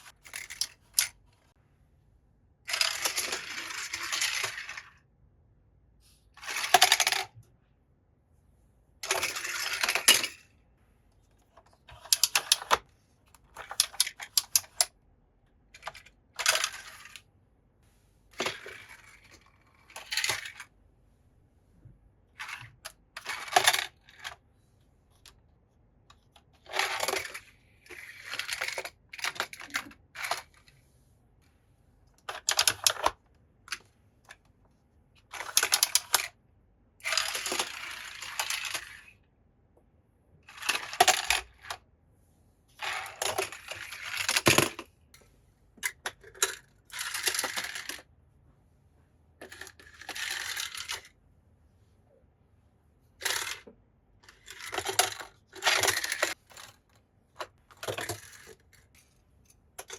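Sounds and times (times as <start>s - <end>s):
toy cars clinking and clattering: 0.0s - 1.3s, 2.7s - 5.0s, 6.4s - 7.4s, 9.0s - 10.5s, 11.4s - 15.0s, 15.7s - 17.3s, 18.3s - 20.7s, 22.4s - 24.4s, 26.1s - 30.8s, 32.2s - 34.4s, 35.2s - 36.4s, 37.0s - 39.2s, 40.4s - 41.8s, 42.8s - 45.2s, 45.8s - 48.1s, 49.4s - 51.2s, 53.2s - 59.9s.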